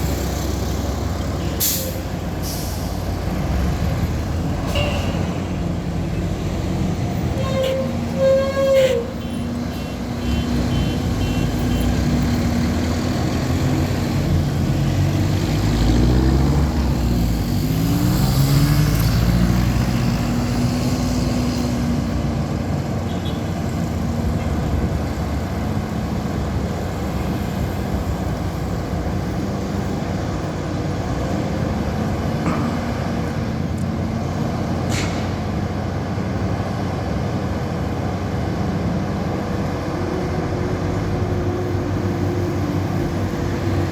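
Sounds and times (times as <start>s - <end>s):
street traffic: 0.0s - 43.9s
diesel truck engine revving: 9.6s - 22.8s.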